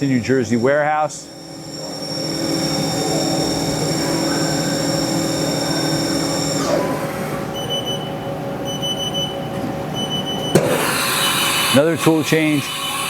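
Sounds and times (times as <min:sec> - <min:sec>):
mill whine winding down: 0:00.0 - 0:08.2, 0:10.5 - 0:13.0
pulsing high tone: 0:00.6 - 0:07.0.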